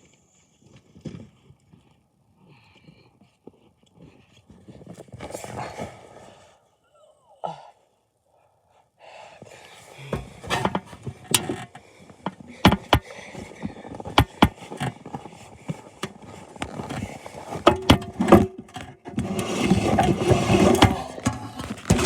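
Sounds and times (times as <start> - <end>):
sharp knocks and clatters: 10.2 - 13.0, 14.0 - 15.0, 16.8 - 22.0
plough blade scraping pavement: 10.2 - 22.0.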